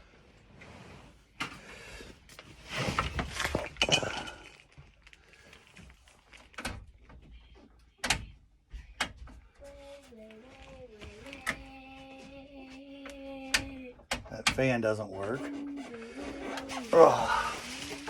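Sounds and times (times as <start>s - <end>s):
loud scraping rustle: 2.4s - 4.7s, 15.0s - 18.0s.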